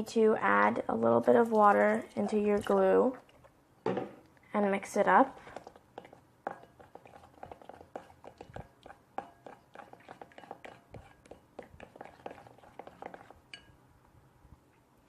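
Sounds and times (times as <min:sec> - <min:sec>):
utensil tapping a bowl while stirring: 0:05.6 - 0:13.8.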